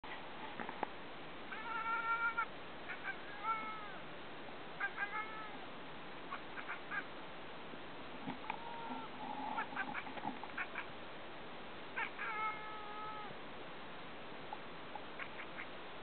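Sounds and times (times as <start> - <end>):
cat chattering and chirping: 1.5 - 3.9, 4.8 - 5.6, 6.3 - 7.1, 8.4 - 10.9, 12.0 - 13.3, 15.2 - 15.7.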